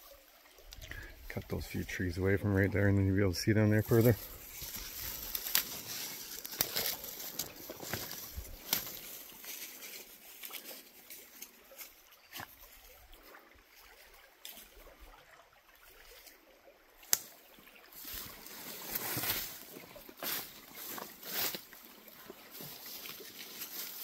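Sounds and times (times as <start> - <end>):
creek trickling: 0.0 - 24.0
clicks and rustles: 4.0 - 10.7.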